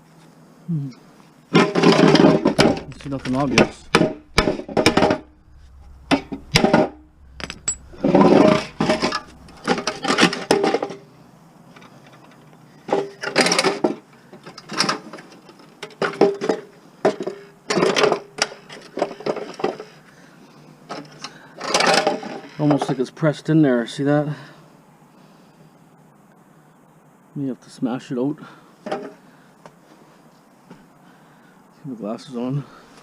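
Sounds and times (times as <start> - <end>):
metal tools clanking: 2.0 - 10.7.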